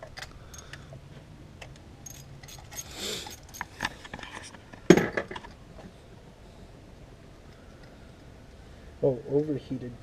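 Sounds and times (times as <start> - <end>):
light metal clinks: 0.0 - 0.9, 1.6 - 4.5
metal parts scraping: 2.0 - 5.6.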